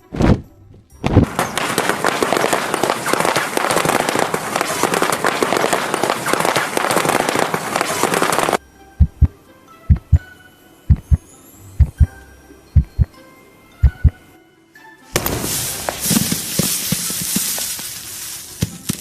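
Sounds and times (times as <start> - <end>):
low thumps: 0.0 - 1.4, 9.0 - 10.2, 10.9 - 11.2, 11.8 - 12.2, 12.8 - 13.1, 13.8 - 14.2
firecrackers popping: 0.0 - 8.6, 15.2 - 19.0.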